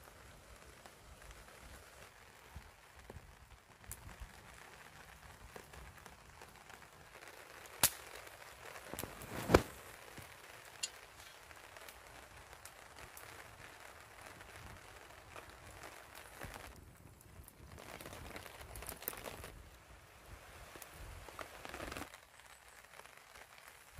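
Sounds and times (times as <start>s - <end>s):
campfire crackling: 0.0s - 23.9s
fire popping: 0.0s - 23.9s.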